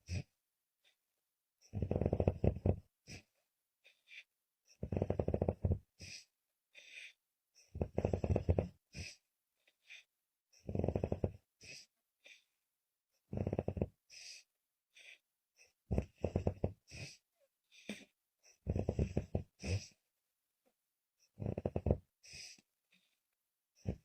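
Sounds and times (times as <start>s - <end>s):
woman snoring: 1.7s - 2.8s, 4.8s - 6.2s, 7.8s - 9.1s, 10.6s - 11.4s, 13.3s - 14.0s, 15.9s - 17.1s, 18.6s - 20.0s, 21.4s - 22.6s, 23.8s - 24.0s.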